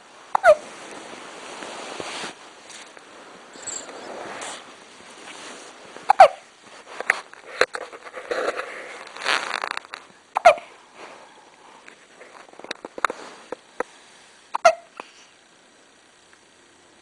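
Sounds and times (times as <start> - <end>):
person hiccuping: 0.3 - 0.6, 10.4 - 10.7, 14.6 - 14.9.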